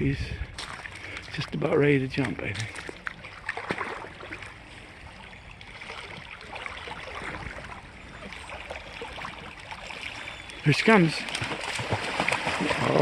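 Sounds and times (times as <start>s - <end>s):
creek water running: 0.0s - 13.0s.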